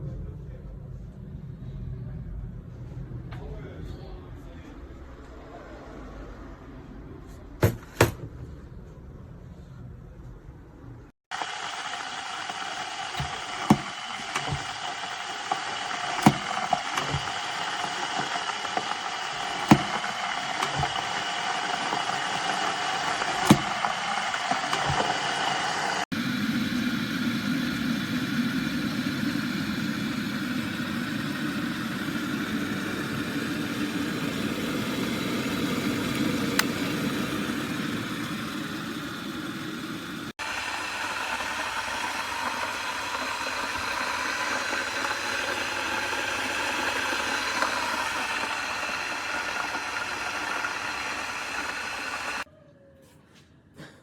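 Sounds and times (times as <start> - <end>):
kettle heating water: 11.3 - 52.5.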